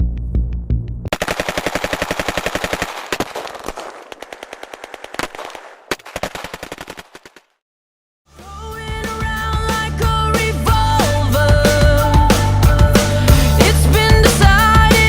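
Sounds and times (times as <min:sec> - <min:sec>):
airsoft guns firing bursts: 0:01.1 - 0:07.5.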